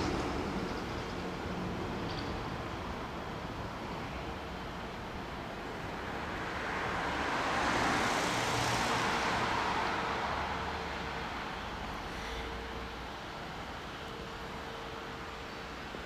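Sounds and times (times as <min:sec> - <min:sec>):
vehicle passing by: 0:06.4 - 0:11.0.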